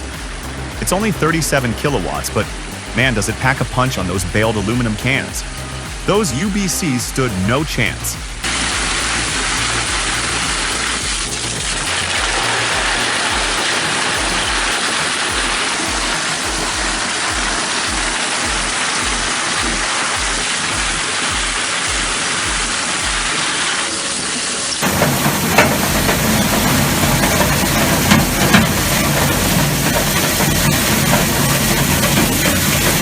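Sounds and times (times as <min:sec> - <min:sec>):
heavy low-pitched machine: 0:00.0 - 0:23.3, 0:24.8 - 0:33.0
low rhythmic thumping: 0:00.0 - 0:23.8, 0:24.8 - 0:33.0
industrial shredder grinding: 0:24.8 - 0:33.0.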